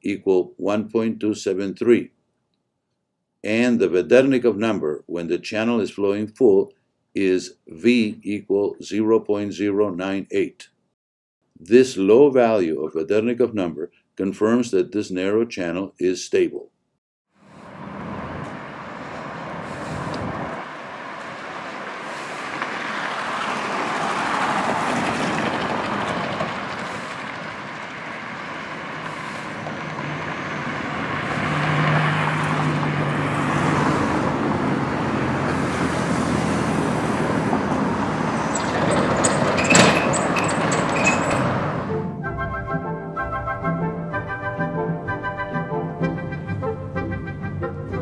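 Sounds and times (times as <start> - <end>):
road traffic passing: 17.3 - 48.0
vehicle engine hum: 17.4 - 42.6.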